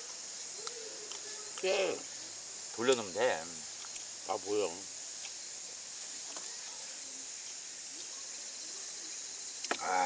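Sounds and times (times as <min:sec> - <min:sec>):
insect chirring: 0:00.0 - 0:10.0.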